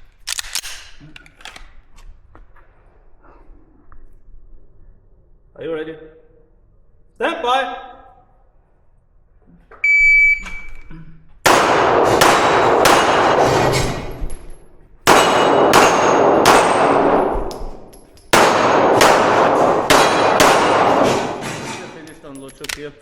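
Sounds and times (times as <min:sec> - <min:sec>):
shot timer beep: 0:09.8 - 0:10.8
rapid pistol fire: 0:11.5 - 0:13.7, 0:15.0 - 0:21.6.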